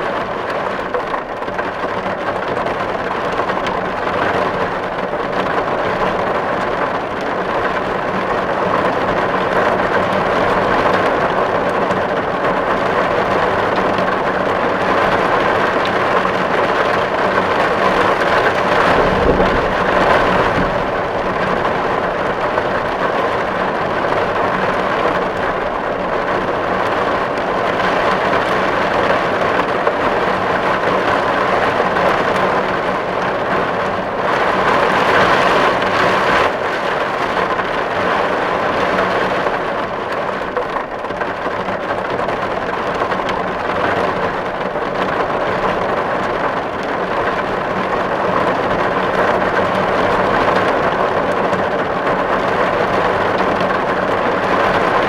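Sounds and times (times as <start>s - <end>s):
rain on a tin roof: 0.0s - 55.0s
low rumble: 17.6s - 24.4s.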